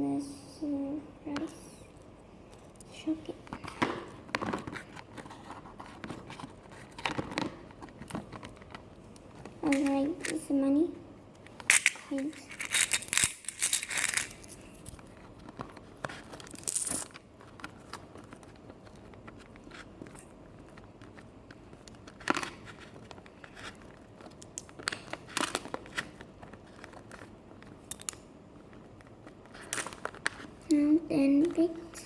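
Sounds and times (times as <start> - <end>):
paper and cardboard rustling: 3.5 - 10.0.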